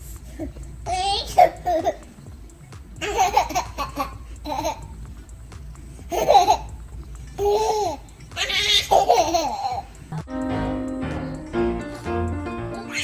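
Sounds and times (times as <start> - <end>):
baby laughing and squealing: 0.3 - 2.2, 3.0 - 4.9, 6.1 - 6.8, 7.4 - 9.9.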